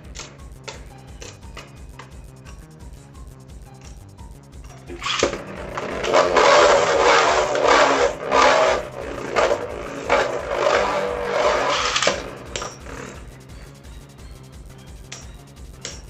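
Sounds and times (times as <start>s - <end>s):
spinning tops grinding and scraping: 4.6s - 13.8s
spinning tops clashing: 4.7s - 13.4s.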